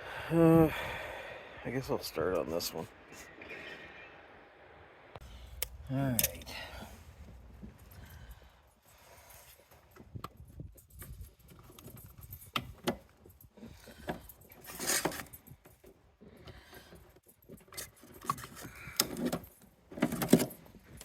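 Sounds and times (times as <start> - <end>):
rustling clatters: 6.4 - 21.0.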